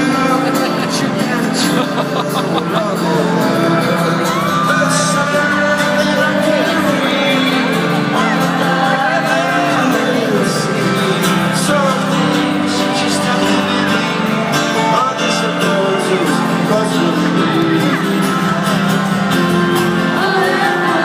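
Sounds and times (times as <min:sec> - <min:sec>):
guitar: 0:00.0 - 0:21.0
live rock band playing: 0:00.0 - 0:21.0
person singing: 0:00.0 - 0:21.0.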